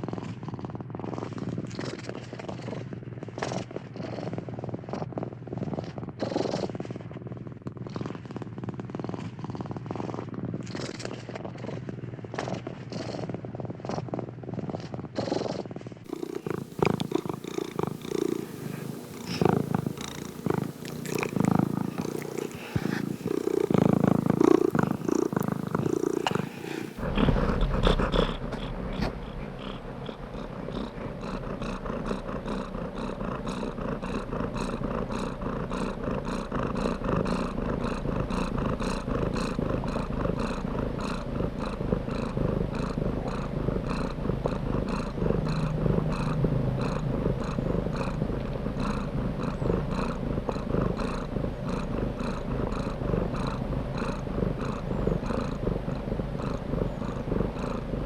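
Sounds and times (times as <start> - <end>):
cat purring: 0.0 - 58.0.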